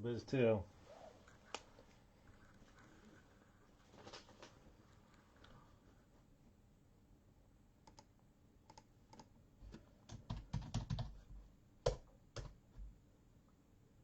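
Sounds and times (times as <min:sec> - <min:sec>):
typing on keyboard: 0:10.1 - 0:11.2, 0:11.8 - 0:12.6.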